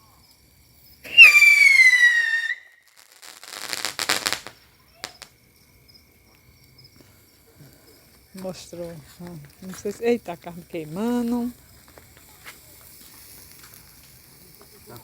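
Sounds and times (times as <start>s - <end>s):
whistling firework rocket: 0.0s - 5.3s
crackling firework pops: 0.0s - 15.0s.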